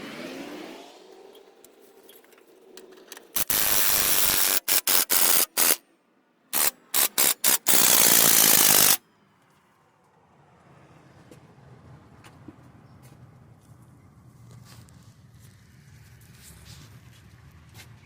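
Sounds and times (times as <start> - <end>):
impact wrench bursts: 3.2 - 5.8, 6.6 - 9.0.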